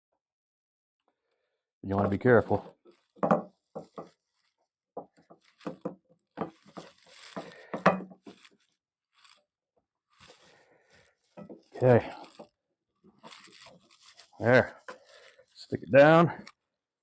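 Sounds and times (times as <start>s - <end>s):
hands scraping and clicking: 6.4s - 8.6s, 13.2s - 15.4s
tape backing peeling: 6.5s - 9.4s, 11.2s - 12.5s, 13.2s - 15.4s.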